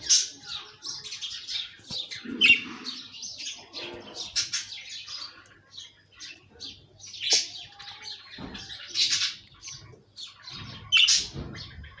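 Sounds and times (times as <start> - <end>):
budgerigars chirping: 0.0 - 7.5, 8.4 - 12.0.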